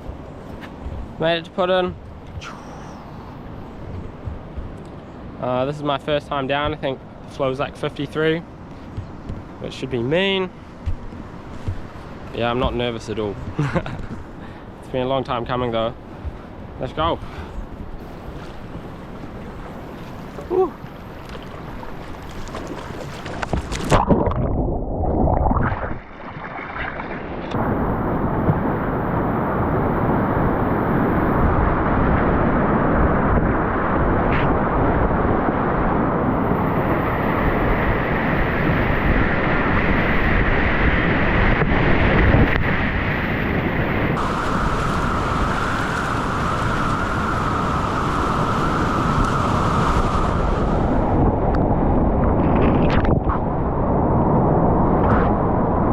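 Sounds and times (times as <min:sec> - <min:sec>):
water washing over microphone: 0:18.0 - 0:27.6, 0:44.1 - 0:51.1
whitewater rushing: 0:44.2 - 0:50.3.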